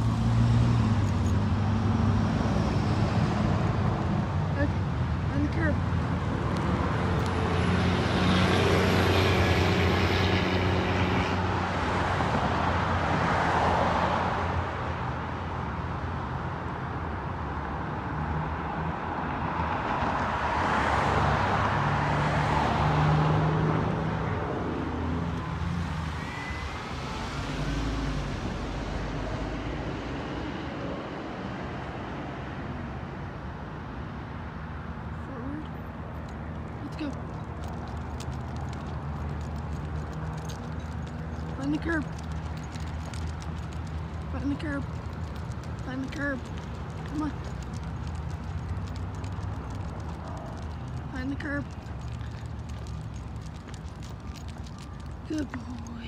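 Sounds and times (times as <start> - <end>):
car engines running: 0.0 - 16.0, 34.8 - 56.0
vehicles passing: 0.0 - 56.0.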